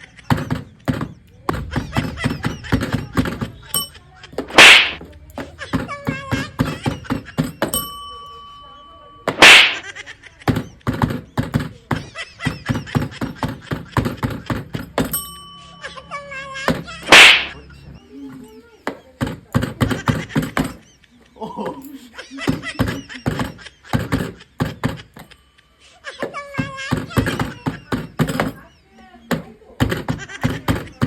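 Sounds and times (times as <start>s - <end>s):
bell ding: 3.7s - 4.1s, 7.6s - 9.9s, 15.0s - 17.8s
very loud slap: 4.5s - 5.0s, 9.3s - 9.8s, 17.1s - 17.6s.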